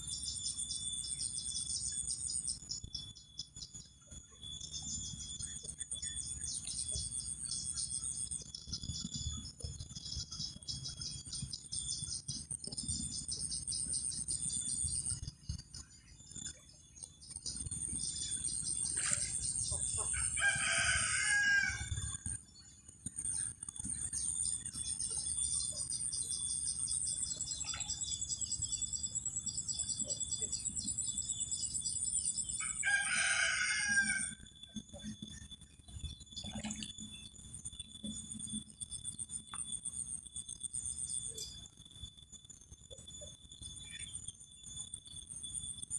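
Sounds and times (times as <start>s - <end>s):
insects chirring: 0.0s - 45.9s
rooster crowing: 19.9s - 22.2s, 32.6s - 34.5s.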